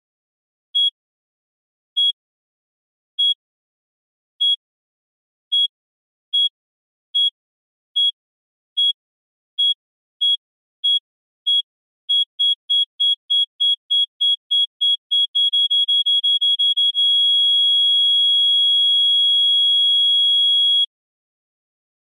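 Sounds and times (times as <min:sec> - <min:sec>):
long steady electronic tone: 0:15.7 - 0:20.9.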